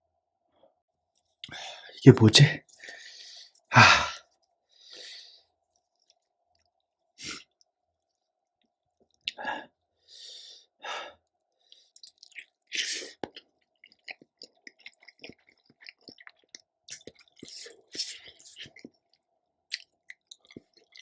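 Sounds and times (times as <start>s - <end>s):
wet chewing and mouth clicks: 3.4s - 9.4s, 11.2s - 21.0s.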